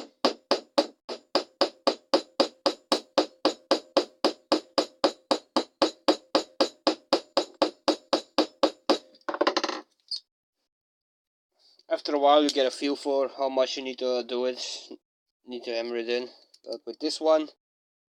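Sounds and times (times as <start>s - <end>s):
small hammer striking metal: 0.0s - 9.1s.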